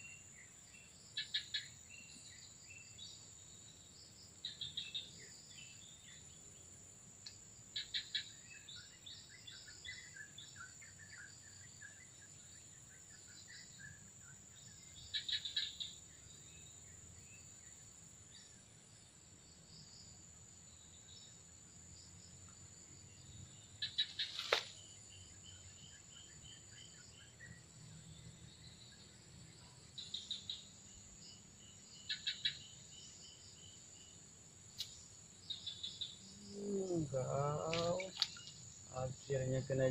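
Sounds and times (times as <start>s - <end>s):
high insect drone: 0.0s - 39.9s
rapid bird chirps: 7.8s - 17.8s, 23.5s - 29.1s, 29.9s - 33.8s.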